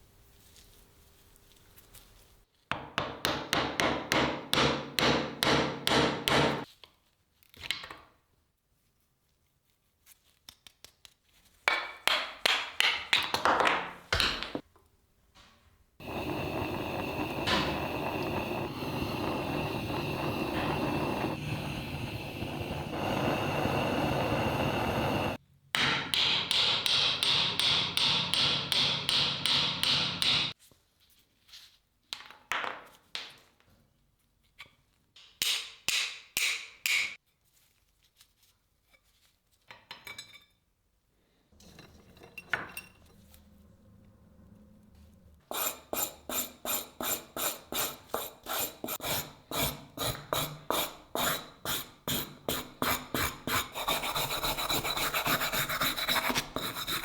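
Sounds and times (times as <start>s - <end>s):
scraping on a steel knife blade: 45.5s - 57.0s.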